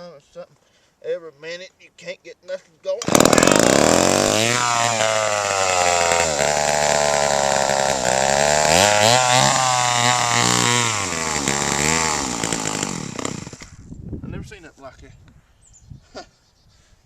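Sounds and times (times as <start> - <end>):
chainsaw engine revving unevenly: 3.0 - 13.7.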